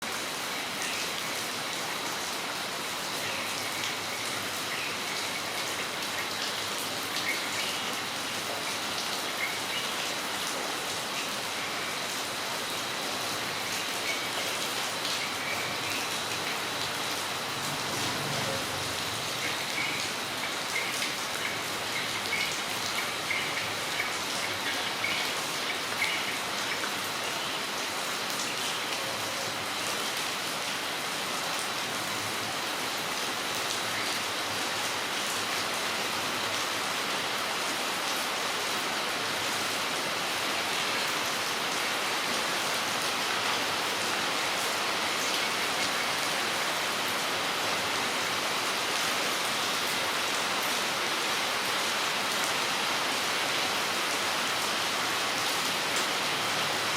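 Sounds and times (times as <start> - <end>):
steady rain hiss: 0.0 - 56.9.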